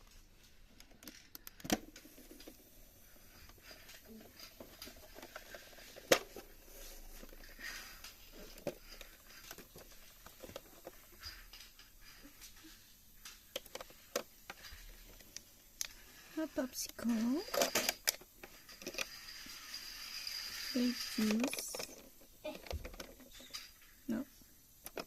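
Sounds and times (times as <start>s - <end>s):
plastic toy parts clicking: 0.8s - 2.5s, 16.8s - 23.8s.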